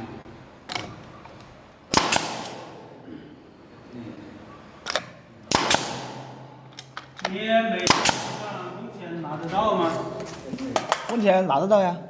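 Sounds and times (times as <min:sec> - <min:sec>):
pneumatic nail gun firing: 0:01.9 - 0:02.9, 0:04.9 - 0:07.0, 0:07.8 - 0:08.6.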